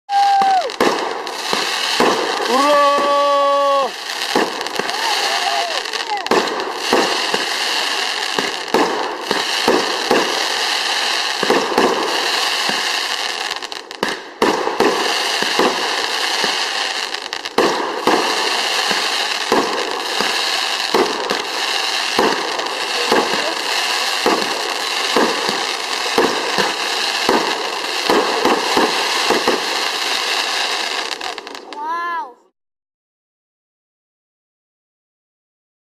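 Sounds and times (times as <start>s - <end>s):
fireworks bangs and crackles: 0.1s - 32.3s.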